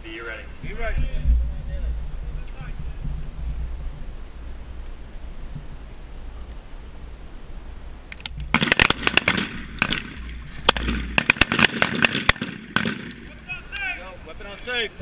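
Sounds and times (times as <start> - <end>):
shotgun shots: 8.5 - 13.4.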